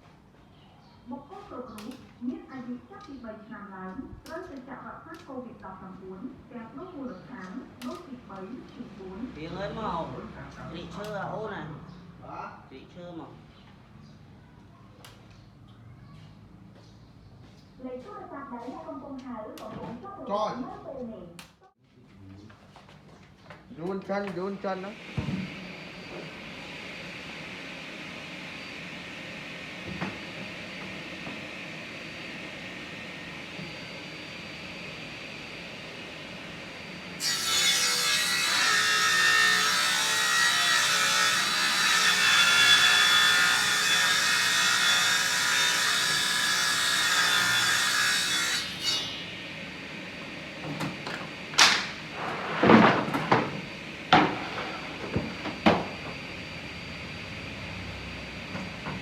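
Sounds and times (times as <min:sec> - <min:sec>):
power saw cutting wood: 0:24.4 - 0:56.9.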